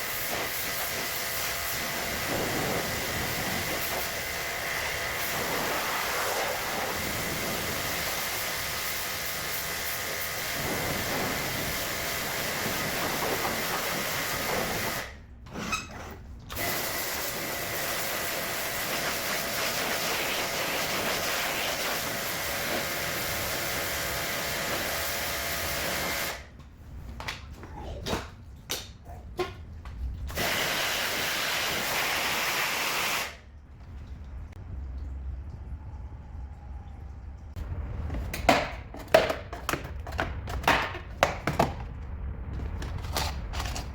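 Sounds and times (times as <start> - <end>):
cleaning machine air hiss: 16.6 - 26.4, 30.4 - 33.4.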